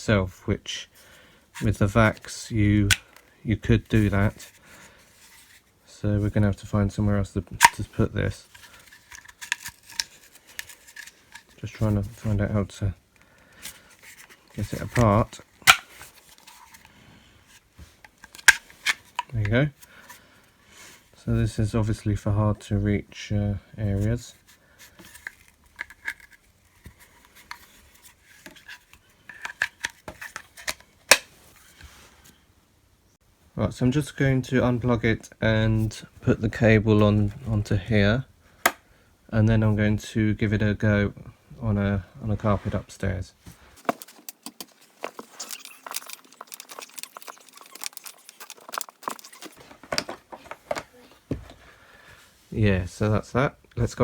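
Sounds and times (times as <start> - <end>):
plastic parts clicking and clacking: 7.5 - 7.9, 8.5 - 11.6, 13.6 - 16.9, 17.5 - 19.5, 25.0 - 31.3, 43.8 - 51.0.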